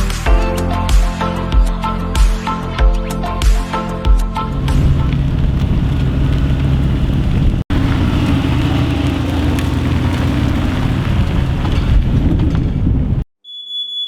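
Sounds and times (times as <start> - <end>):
loud crackly car exhaust: 4.4 - 13.3.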